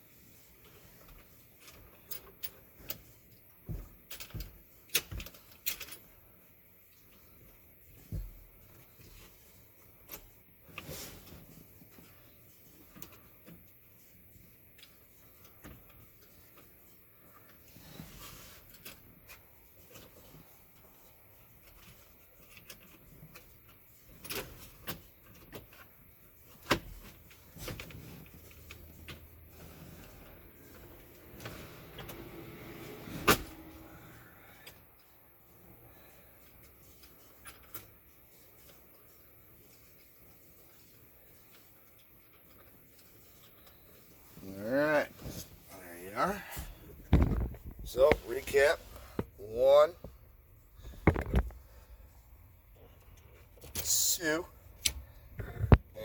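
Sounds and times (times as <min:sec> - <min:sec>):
car parts clicking and knocking: 0:46.8 - 0:48.0, 0:50.0 - 0:51.7.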